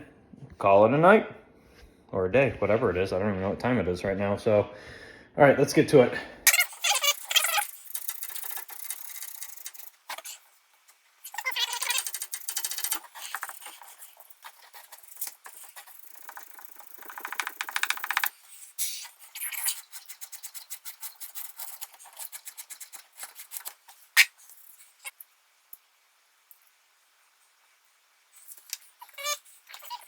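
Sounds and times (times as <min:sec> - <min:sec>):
tools scraping copper pipe: 0:11.3 - 0:24.3.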